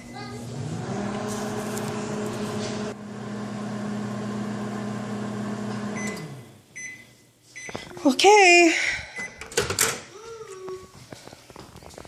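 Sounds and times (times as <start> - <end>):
microwave oven humming: 0.0 - 6.6.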